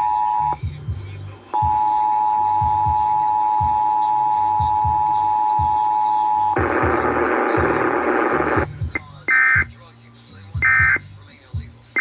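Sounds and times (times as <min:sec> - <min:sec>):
two-tone alert signal: 0:00.0 - 0:00.6, 0:01.6 - 0:06.6
harsh buzzing data noise: 0:00.0 - 0:12.0.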